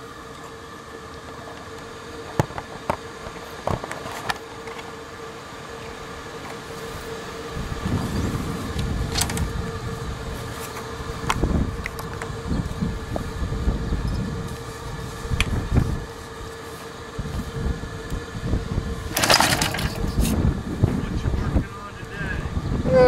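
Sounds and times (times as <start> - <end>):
steady background hum: 0.0 - 23.0
low rumbling rub: 7.6 - 16.6.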